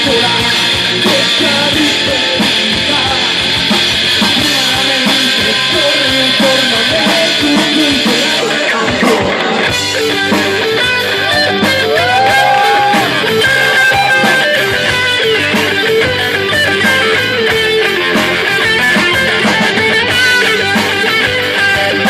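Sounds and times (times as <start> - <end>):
bending guitar line: 0.0 - 22.0
drums: 0.0 - 22.0
strummed electric guitars: 0.0 - 22.0.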